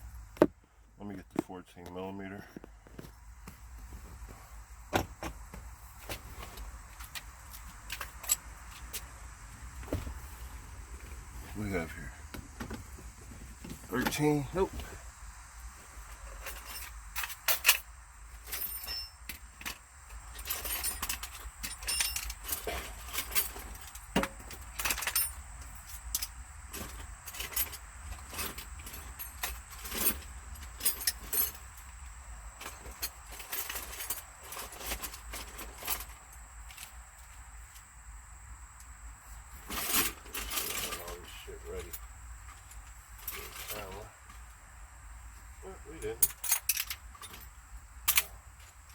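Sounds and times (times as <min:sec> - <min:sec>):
metal hand tools clinking: 0:18.5 - 0:19.3, 0:20.4 - 0:24.0, 0:46.2 - 0:47.5.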